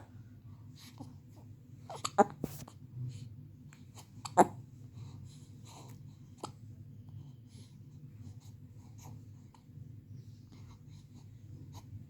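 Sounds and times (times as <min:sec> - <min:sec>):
low steady hum: 0:00.0 - 0:12.0
faint scratchy rustling: 0:02.4 - 0:02.8.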